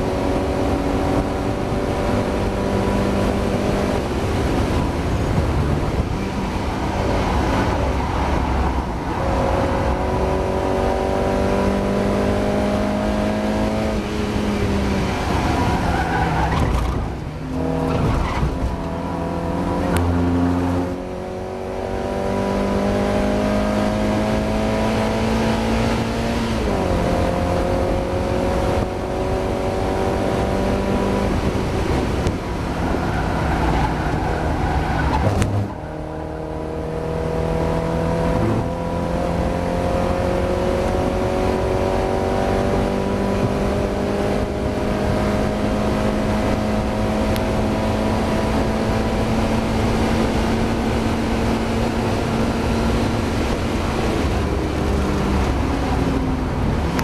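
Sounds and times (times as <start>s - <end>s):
race car engine revving: 0.0s - 57.0s.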